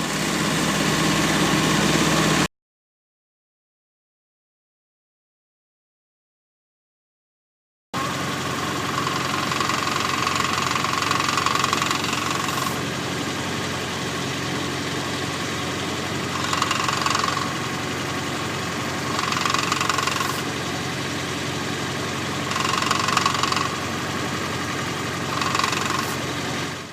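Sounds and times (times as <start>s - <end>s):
engine idling: 0.0s - 2.5s, 8.0s - 26.9s
clutch whirring: 8.0s - 12.9s, 15.8s - 26.8s.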